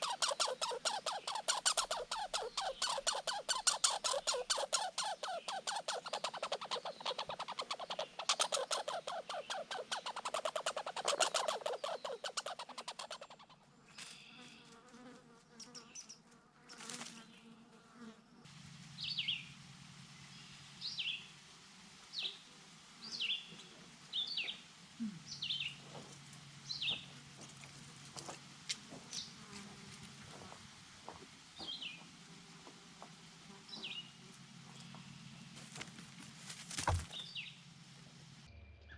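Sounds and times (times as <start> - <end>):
squirrel chattering rattle: 0.0 - 13.6.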